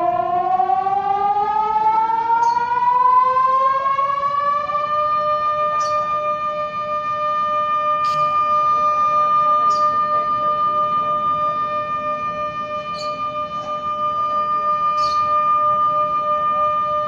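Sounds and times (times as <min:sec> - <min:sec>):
warning siren wailing: 0:00.0 - 0:17.0.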